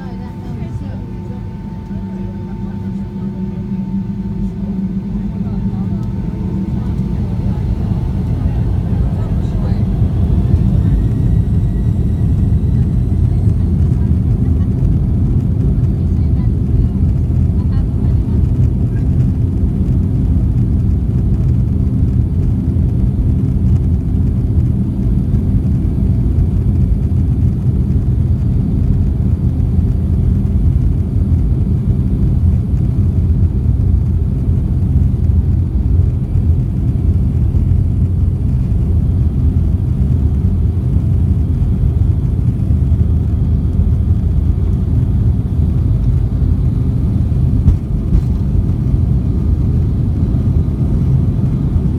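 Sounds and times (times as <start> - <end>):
airliner cabin rumble: 0.0 - 51.9.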